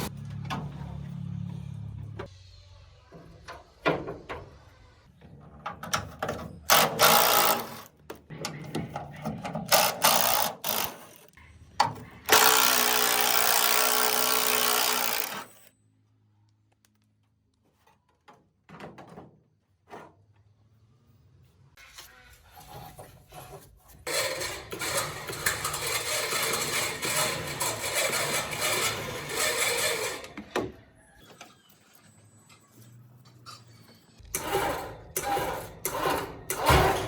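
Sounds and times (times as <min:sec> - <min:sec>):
power tool running in bursts: 0:06.7 - 0:07.9, 0:12.3 - 0:15.7.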